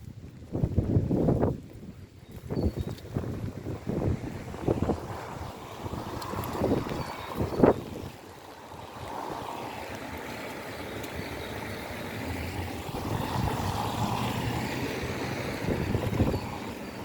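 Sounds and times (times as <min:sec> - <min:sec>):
steady rain: 0:03.1 - 0:17.0
tyre hiss on wet road: 0:04.2 - 0:16.8.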